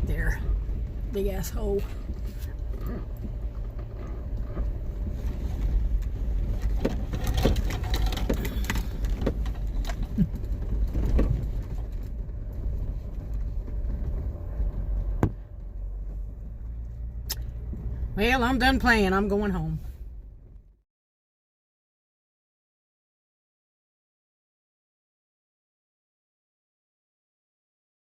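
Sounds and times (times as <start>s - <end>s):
car knocking over bumps: 0.0s - 19.1s
car engine and tyres rumbling: 0.0s - 20.8s.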